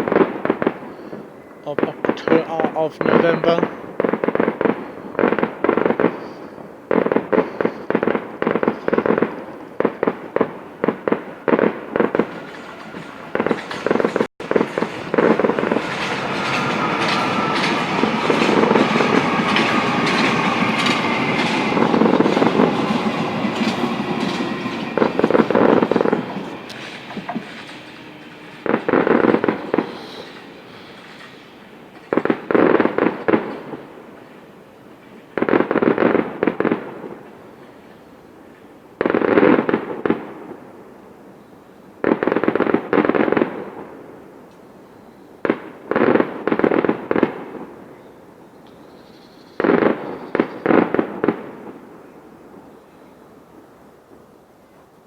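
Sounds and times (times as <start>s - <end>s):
fireworks crackling bangs: 0.0s - 41.3s, 42.0s - 44.8s, 45.4s - 48.0s, 49.6s - 52.7s.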